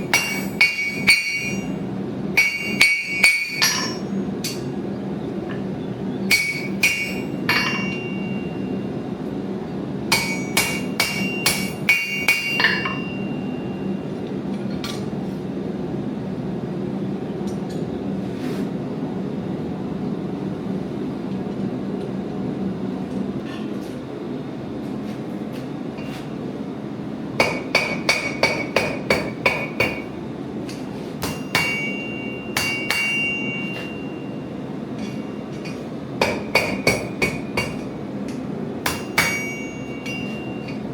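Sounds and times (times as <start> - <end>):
hammer striking metal on anvil: 0.0 - 1.8, 2.4 - 4.7, 6.3 - 8.6, 10.1 - 13.8, 27.4 - 30.1, 30.7 - 40.9.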